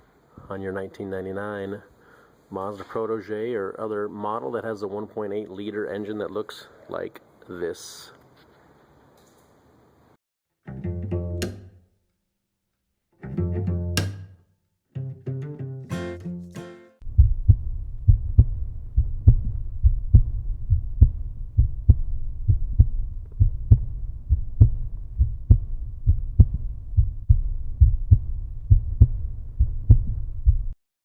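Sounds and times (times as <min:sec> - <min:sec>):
low thumping beat: 0:15.9 - 0:30.8.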